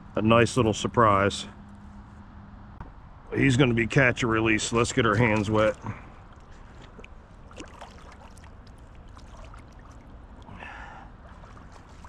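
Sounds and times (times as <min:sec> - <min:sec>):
creek water splashing and trickling: 0:04.4 - 0:12.0
rush of water: 0:05.2 - 0:12.0
water drips: 0:05.2 - 0:12.0.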